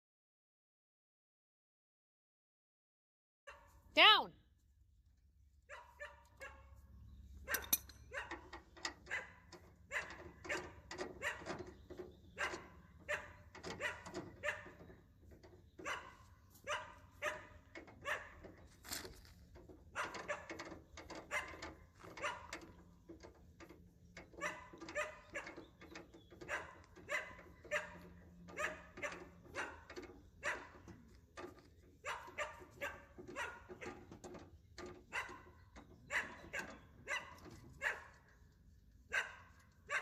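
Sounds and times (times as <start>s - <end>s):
dog barking: 3.5s - 3.8s, 5.7s - 6.8s, 7.4s - 8.4s, 9.1s - 11.5s, 12.4s - 14.8s, 15.8s - 18.4s, 19.9s - 20.6s, 21.3s - 22.6s, 24.3s - 25.6s, 26.4s - 30.9s, 32.0s - 34.0s, 35.1s - 38.2s, 39.1s - 40.0s.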